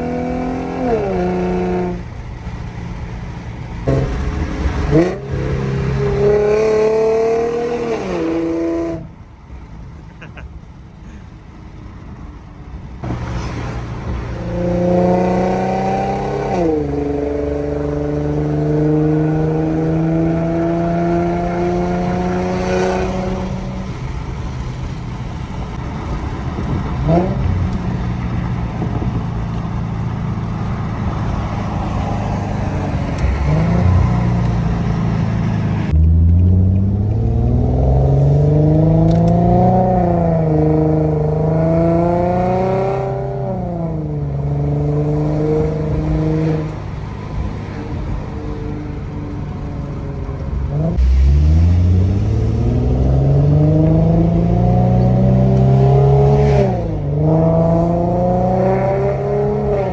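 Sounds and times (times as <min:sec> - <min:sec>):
car engine revving under throttle: 0:35.9 - 0:46.9, 0:50.7 - 0:59.9.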